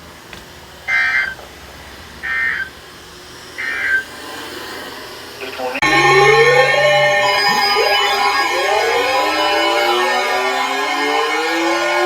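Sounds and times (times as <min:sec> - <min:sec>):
warbling two-tone digital data bursts: 0:05.4 - 0:12.0.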